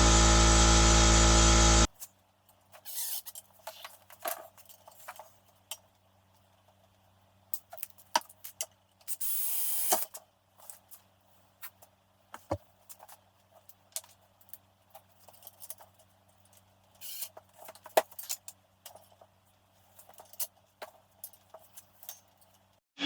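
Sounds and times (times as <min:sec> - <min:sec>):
tools and metal parts clicking: 0:12.9 - 0:19.2, 0:19.8 - 0:22.8.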